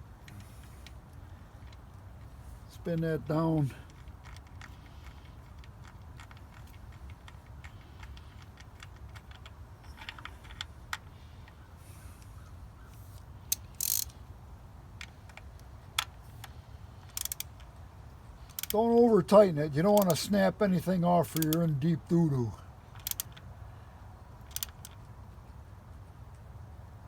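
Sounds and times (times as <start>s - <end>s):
socket ratchet clicking: 13.5s - 14.2s, 15.0s - 17.7s, 18.4s - 18.8s, 21.3s - 21.6s, 22.9s - 23.5s, 24.4s - 25.0s.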